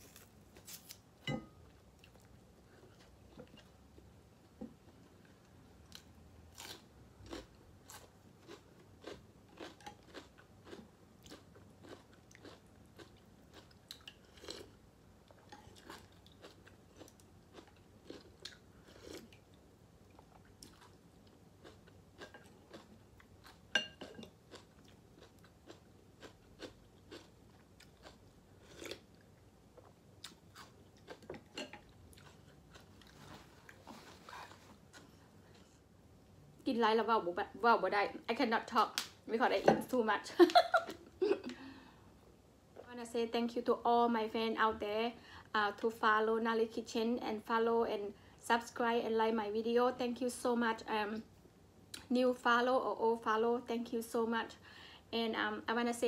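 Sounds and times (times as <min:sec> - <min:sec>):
chewing and mouth sounds: 0:05.9 - 0:14.7, 0:15.3 - 0:29.2, 0:29.8 - 0:35.7.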